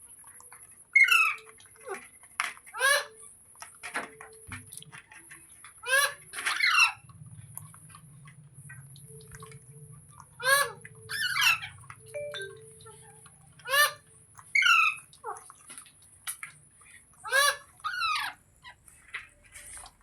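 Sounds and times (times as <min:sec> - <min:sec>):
parrot screeching: 0:02.8 - 0:03.2, 0:05.8 - 0:07.0, 0:10.4 - 0:11.8, 0:13.6 - 0:15.0, 0:17.2 - 0:18.8.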